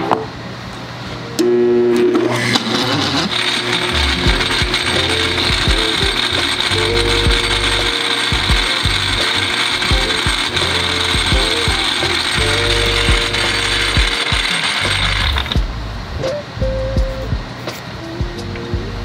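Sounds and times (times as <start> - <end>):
background music with steady beat: 3.9 - 19.0.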